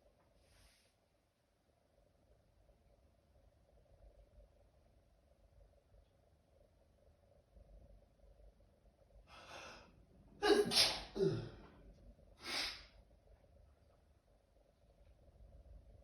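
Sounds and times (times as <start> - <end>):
person gasping in-breath: 9.3 - 11.7
person sneezing: 10.4 - 11.7
short breath: 12.4 - 12.9.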